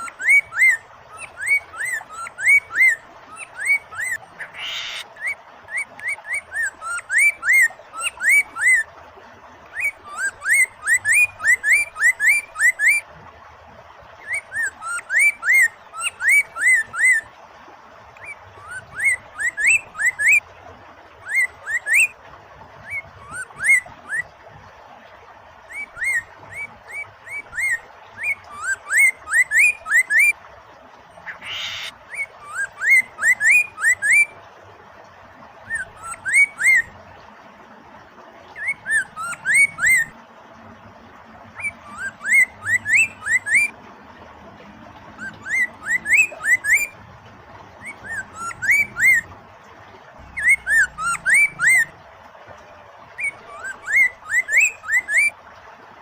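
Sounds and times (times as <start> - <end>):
bird singing whistled notes: 0.0 - 8.8, 9.7 - 13.0, 14.2 - 17.3, 18.2 - 20.4, 21.2 - 22.1, 25.7 - 30.4, 31.4 - 34.3, 35.7 - 36.9, 38.6 - 40.1, 41.6 - 43.7, 45.2 - 47.0, 47.8 - 49.3, 50.3 - 51.9, 53.2 - 55.3
flowing water: 0.0 - 56.0.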